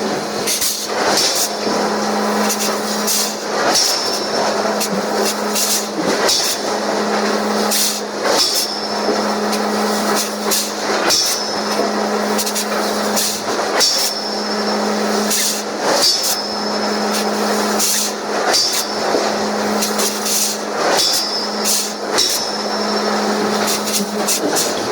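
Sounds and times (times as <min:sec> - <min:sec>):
high metallic ring: 0:21.0 - 0:23.3.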